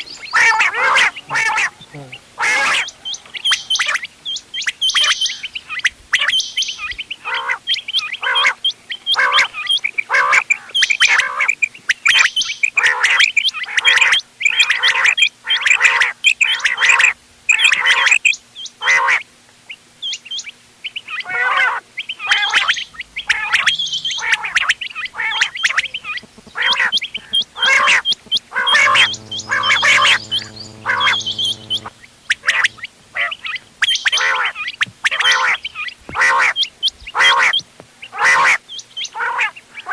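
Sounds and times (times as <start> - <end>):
quails calling: 0.0 - 18.2, 20.4 - 39.5
low buzzing hum: 22.6 - 33.8.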